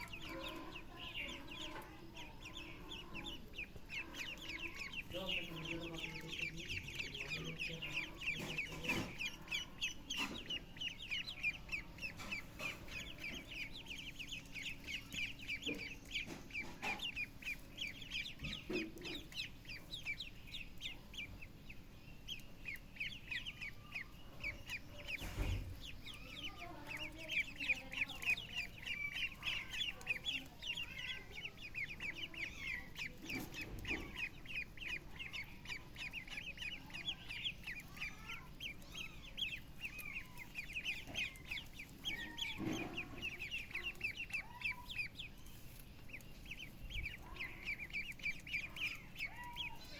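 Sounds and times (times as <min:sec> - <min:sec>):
poultry chirping and clucking: 0:00.0 - 0:49.9.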